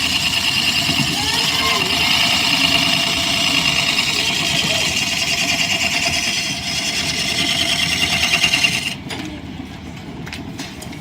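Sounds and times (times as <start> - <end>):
wood lathe and belts clattering: 0.0 - 9.0.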